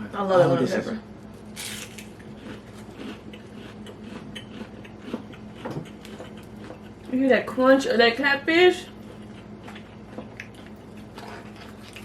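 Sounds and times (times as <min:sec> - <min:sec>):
crunchy fried fish being chewed: 0:01.2 - 0:07.2, 0:08.8 - 0:12.0.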